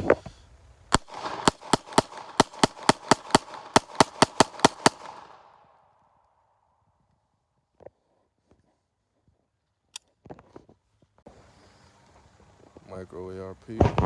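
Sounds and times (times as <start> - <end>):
gunshot echo: 0.9 - 5.8
pistol firing rapid shots: 0.9 - 5.8.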